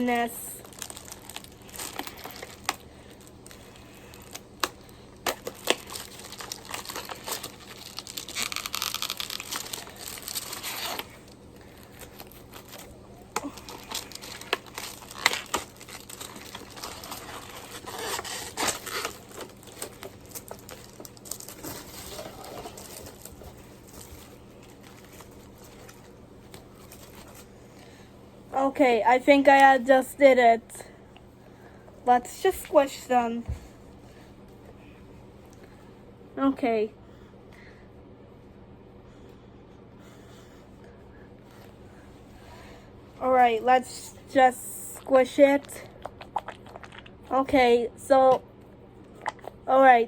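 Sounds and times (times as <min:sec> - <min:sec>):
packaging crinkling and tearing: 0:00.0 - 0:28.0.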